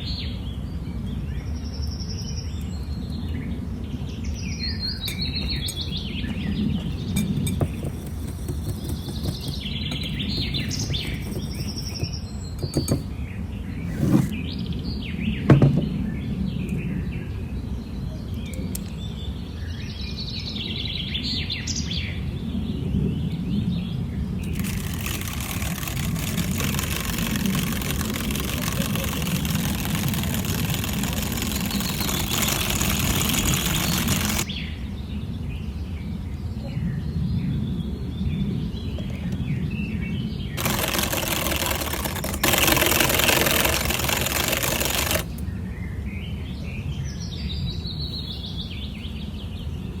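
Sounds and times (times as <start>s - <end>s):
small birds chirping: 1.0s - 14.4s, 24.4s - 34.8s, 37.2s - 50.0s
electric mixer running: 5.0s - 13.0s, 24.5s - 34.4s, 40.6s - 45.4s
soft knocks: 15.5s - 15.9s.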